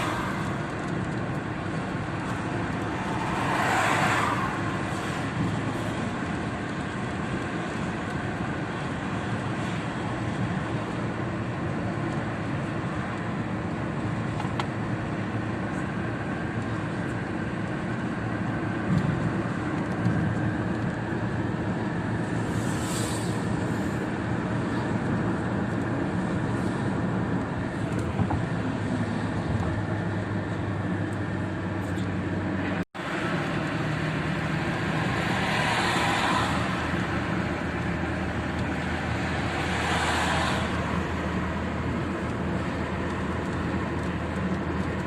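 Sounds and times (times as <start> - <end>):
road and engine noise: 0.0 - 45.0.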